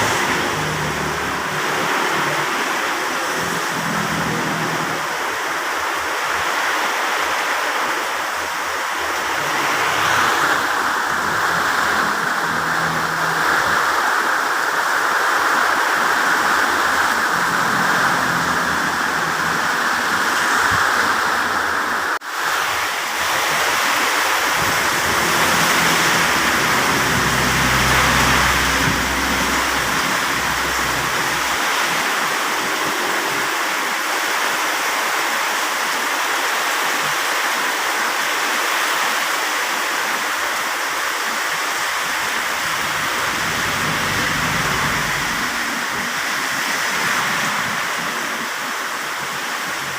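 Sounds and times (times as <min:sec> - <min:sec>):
heavy rain pouring: 0:00.0 - 0:49.9
low rumble: 0:09.6 - 0:14.0, 0:16.0 - 0:21.9, 0:24.4 - 0:33.8, 0:42.1 - 0:46.0.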